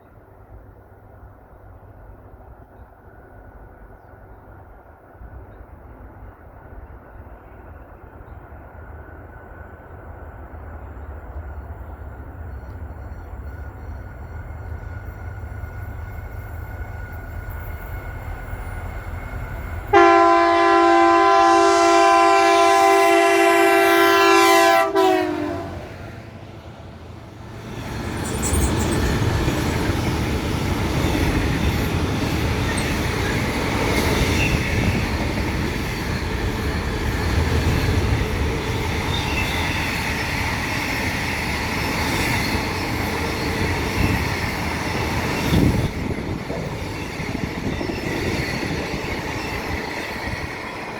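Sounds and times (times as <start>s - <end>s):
train wheels rumbling and clattering: 1.6s - 22.4s, 25.9s - 50.9s
locomotive horn blast: 19.9s - 26.2s.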